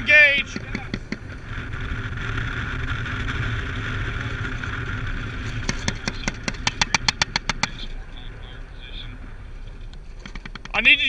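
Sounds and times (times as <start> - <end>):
military vehicle driving: 0.0 - 11.0
rapid sharp clicks: 5.5 - 7.8, 9.9 - 11.0.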